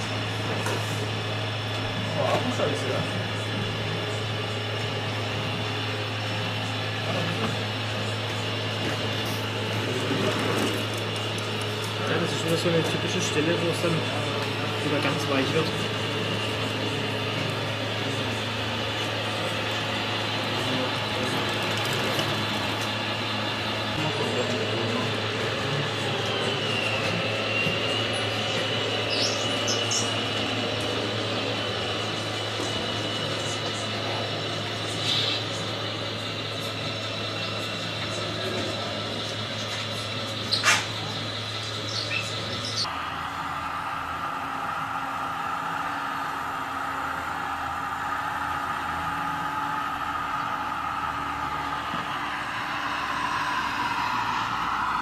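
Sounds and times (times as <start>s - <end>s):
hall background noise: 0.0s - 55.0s
low hum: 41.1s - 55.0s.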